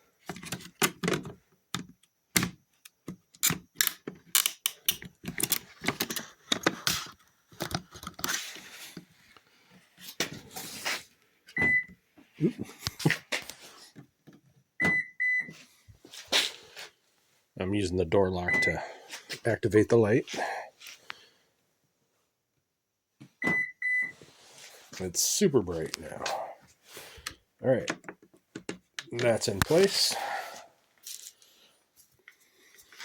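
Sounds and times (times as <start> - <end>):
quick car beeps: 18.5 - 18.8, 23.4 - 24.1.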